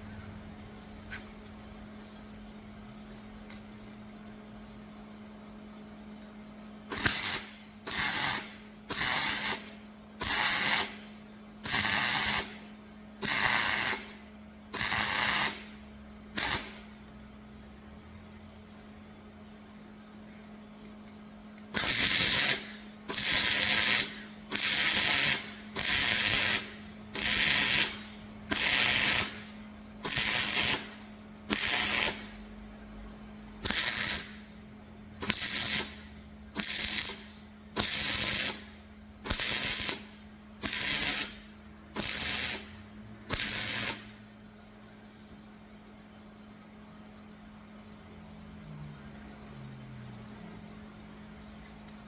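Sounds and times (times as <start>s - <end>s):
steady low hum: 0.0s - 52.0s
mig welder bursts: 6.8s - 17.0s, 21.6s - 32.4s, 33.6s - 44.3s.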